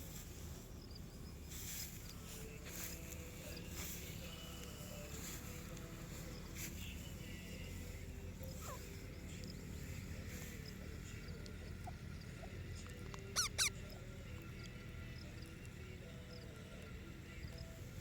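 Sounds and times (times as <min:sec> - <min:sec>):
parrot squawking: 0:13.4 - 0:13.8.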